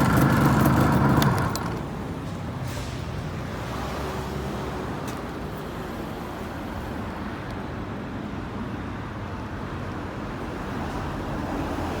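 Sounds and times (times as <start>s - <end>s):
two-stroke engine running: 0.0s - 2.0s.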